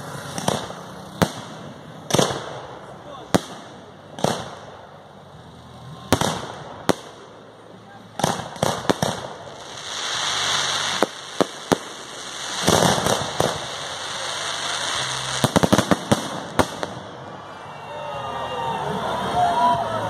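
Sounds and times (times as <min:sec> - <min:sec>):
firework hissing: 0:00.0 - 0:17.7
firework shells bursting: 0:08.2 - 0:17.1.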